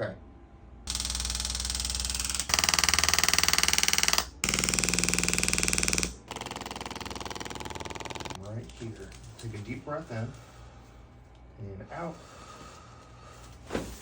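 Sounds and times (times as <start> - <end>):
small motor pulsing rapidly: 0.9 - 8.4.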